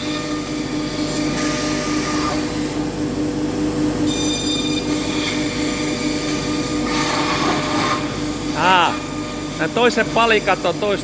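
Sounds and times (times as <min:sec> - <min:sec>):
router spindle whining: 0:07.3 - 0:11.0.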